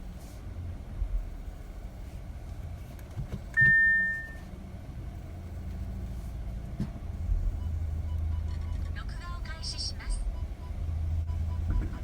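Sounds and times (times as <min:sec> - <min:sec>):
car cabin low rumble: 0:00.0 - 0:12.0
high tone: 0:03.6 - 0:04.5.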